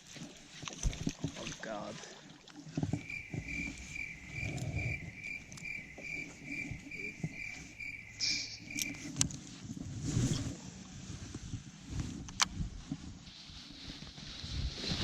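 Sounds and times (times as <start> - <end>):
cricket chirping: 2.8 - 9.3.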